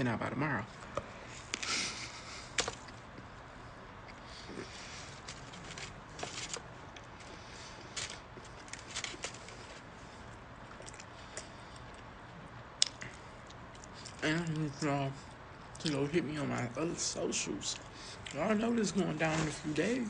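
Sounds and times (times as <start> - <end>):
faint steady hum: 0.0 - 20.0
person chewing: 4.0 - 12.1, 12.8 - 16.1.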